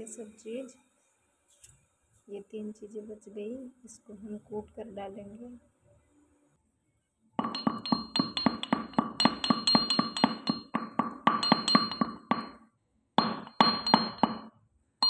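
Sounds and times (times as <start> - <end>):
pestle pounding in a mortar: 7.4 - 12.6, 13.2 - 14.5.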